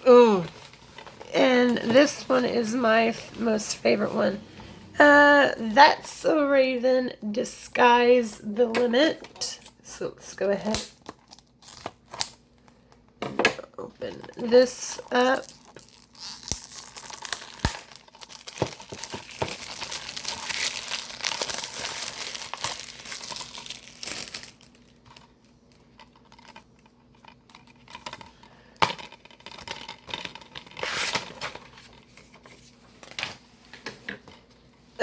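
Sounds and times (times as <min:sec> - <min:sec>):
plastic wrap tearing and crinkling: 0:10.6 - 0:12.5, 0:14.1 - 0:26.6, 0:28.9 - 0:33.4.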